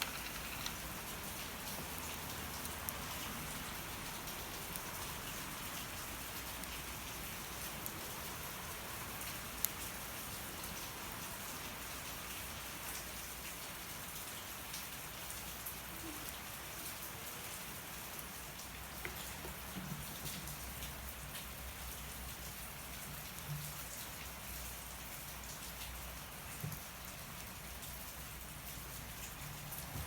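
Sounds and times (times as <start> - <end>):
wood fire crackling: 0.0 - 13.5
steady rain: 0.0 - 30.0.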